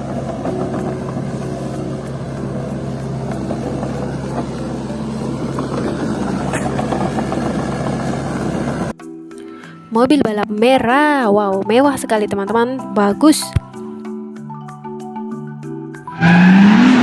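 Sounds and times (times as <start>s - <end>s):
truck engine hum: 0.0s - 9.0s, 15.6s - 17.0s.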